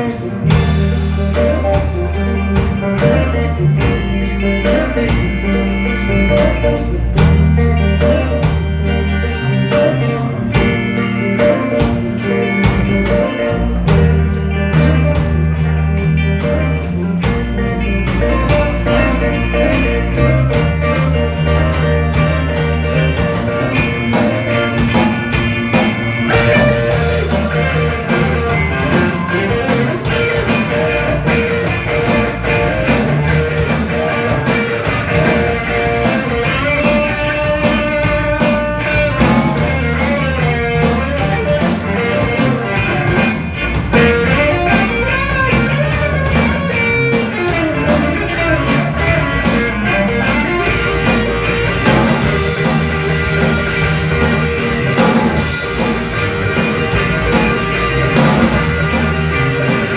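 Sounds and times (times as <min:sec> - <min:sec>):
bass guitar notes: 0:00.0 - 0:59.9
blues guitar: 0:00.0 - 0:59.9
drum beat: 0:22.3 - 0:59.9.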